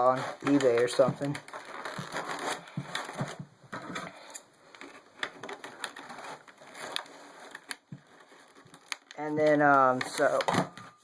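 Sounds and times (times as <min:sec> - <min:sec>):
plastic packaging clicking and crinkling: 0:00.0 - 0:11.0.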